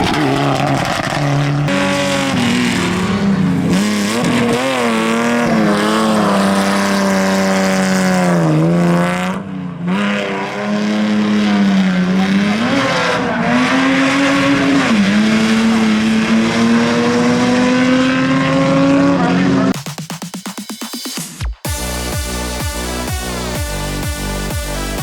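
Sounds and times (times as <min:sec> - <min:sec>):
rally car engine revving: 0:00.0 - 0:19.8.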